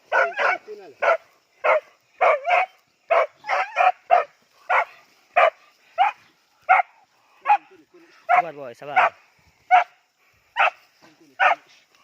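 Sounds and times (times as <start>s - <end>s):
dog barking: 0.1s - 10.8s, 11.4s - 11.7s.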